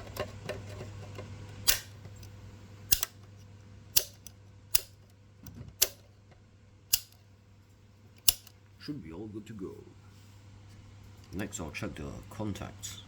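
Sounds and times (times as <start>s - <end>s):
fan switch clicks: 1.6s - 2.3s, 2.9s - 3.2s, 3.9s - 6.0s, 6.9s - 7.2s, 8.2s - 8.6s.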